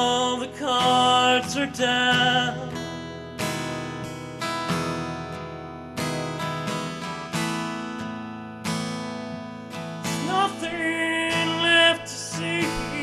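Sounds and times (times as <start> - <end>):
person singing: 0.0 - 2.8, 10.1 - 13.0
acoustic guitar strummed chords: 0.0 - 13.0.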